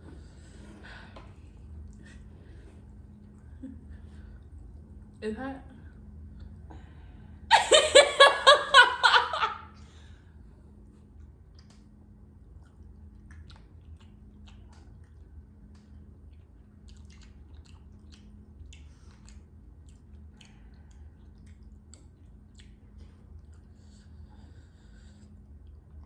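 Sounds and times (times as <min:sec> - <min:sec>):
faint low hum: 0:00.0 - 0:26.0
chewing fried chicken: 0:09.8 - 0:26.0.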